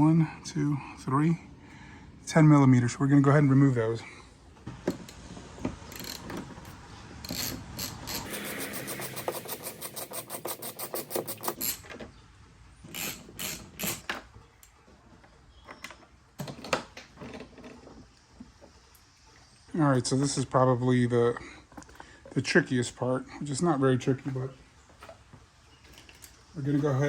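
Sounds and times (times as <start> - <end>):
tool and bolts clattering: 4.9 - 12.1, 12.9 - 14.3
ratchet wrench clicking: 7.2 - 11.8, 12.9 - 14.1.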